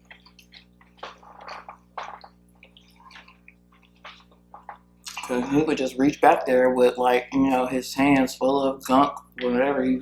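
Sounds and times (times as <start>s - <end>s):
wet mouth clicks and smacks: 0.0s - 5.4s
soft chewing: 0.0s - 6.2s
faint electrical hum: 0.0s - 10.0s.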